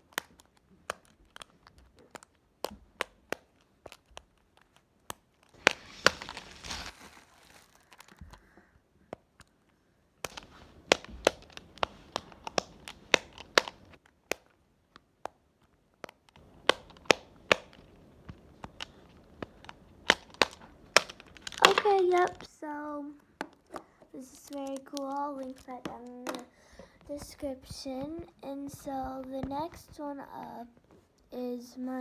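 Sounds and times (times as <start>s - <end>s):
crinkly rustling: 0.0s - 8.7s, 10.3s - 14.2s, 15.6s - 31.3s
silicone fidget toy popping: 10.2s - 14.5s, 16.4s - 22.5s, 24.5s - 29.9s.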